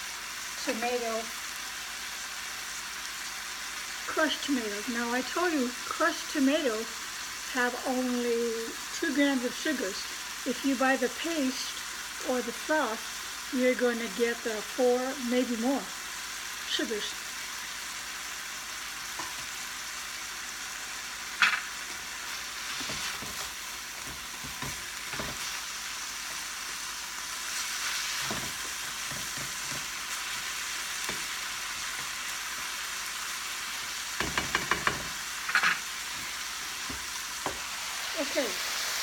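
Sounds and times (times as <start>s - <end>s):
meat sizzling in a frying pan: 0.0s - 39.0s
utensil knocking against pan: 34.2s - 35.7s.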